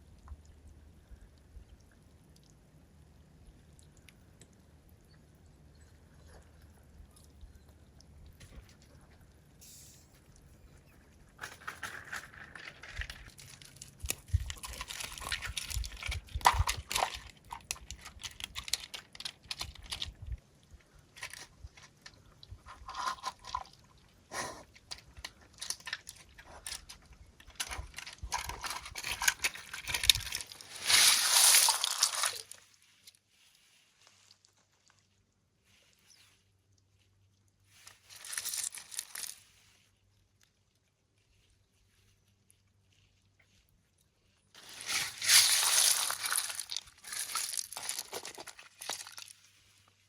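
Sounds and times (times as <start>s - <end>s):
water sloshing and splashing: 25.0s - 33.0s, 44.5s - 49.9s.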